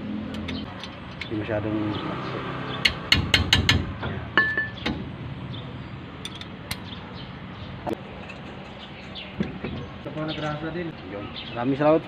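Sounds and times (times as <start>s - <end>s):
wrench clicking on bolts: 6.2s - 6.8s.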